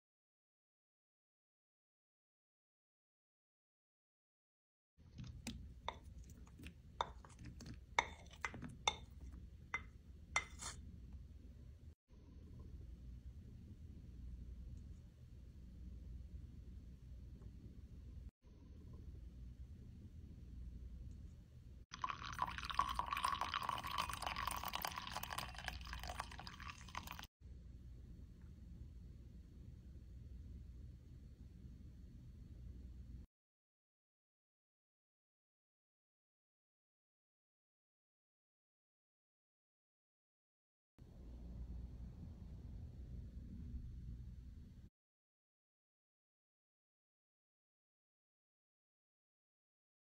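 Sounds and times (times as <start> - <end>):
low hum: 41.0 - 44.9.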